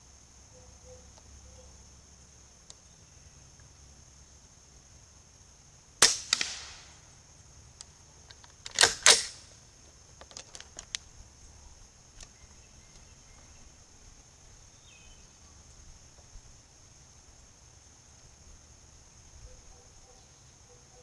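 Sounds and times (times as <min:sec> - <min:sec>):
insects buzzing: 0:00.0 - 0:21.0
faint clicks: 0:02.6 - 0:02.8
suppressed rifle shots: 0:06.0 - 0:07.1, 0:08.7 - 0:09.6.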